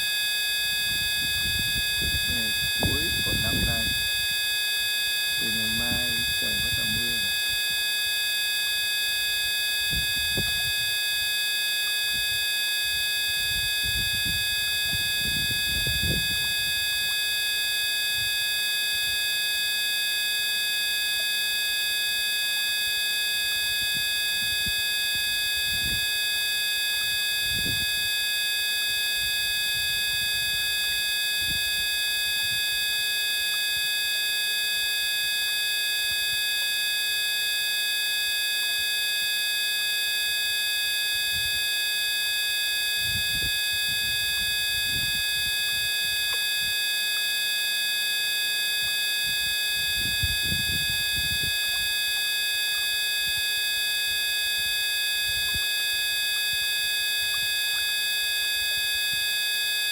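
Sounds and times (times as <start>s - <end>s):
electronic drone: 2.2s - 4.0s, 5.4s - 7.4s.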